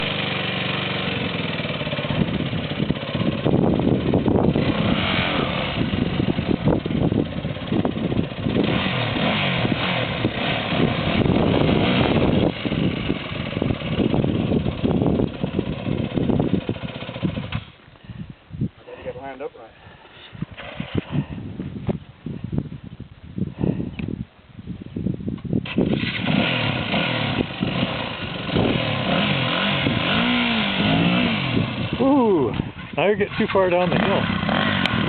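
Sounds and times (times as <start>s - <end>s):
motorcycle engine revving hard: 0.0s - 17.7s, 20.5s - 21.4s, 25.6s - 35.0s.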